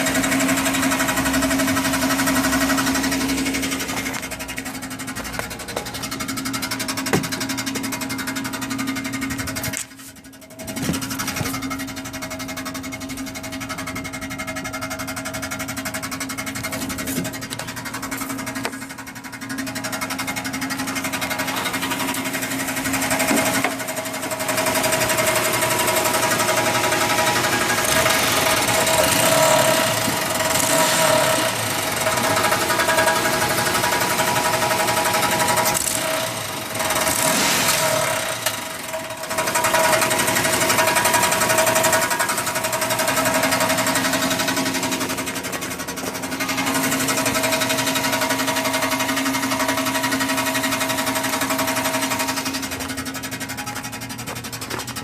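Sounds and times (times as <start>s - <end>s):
road noise: 0.0s - 12.2s, 35.7s - 55.0s
car engine pulling under throttle: 0.0s - 55.0s
rapid mechanical rattle: 0.0s - 55.0s.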